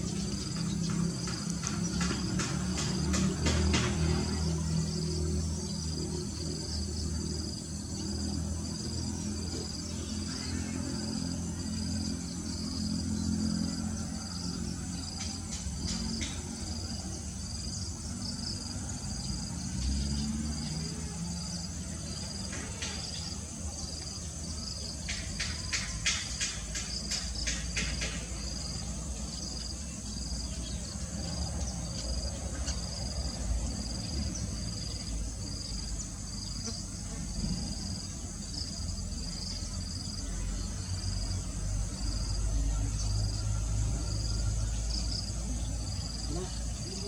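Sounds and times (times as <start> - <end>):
cricket chirping: 0.0 - 47.0.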